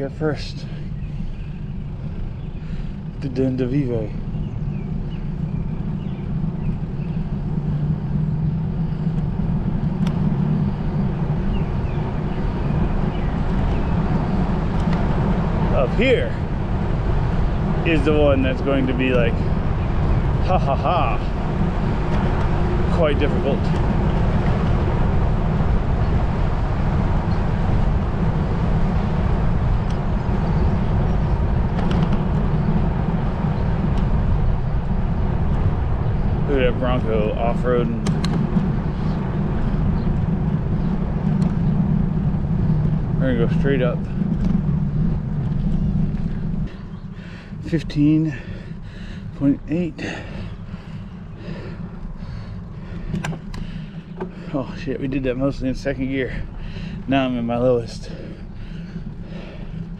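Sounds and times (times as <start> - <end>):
bicycle tyre noise: 0.0 - 59.9
wind rumble: 0.0 - 59.9
bicycle click: 4.5 - 11.7, 12.3 - 15.5, 29.0 - 36.2, 38.0 - 43.1, 44.0 - 47.6, 50.3 - 54.5
faint clicks: 10.0 - 10.2, 14.7 - 15.1.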